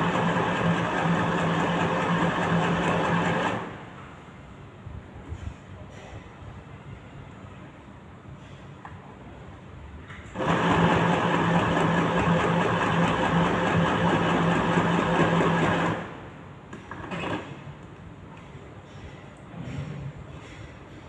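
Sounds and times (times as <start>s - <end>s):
electric sewing machine stitching: 0.0s - 3.8s, 10.4s - 16.2s.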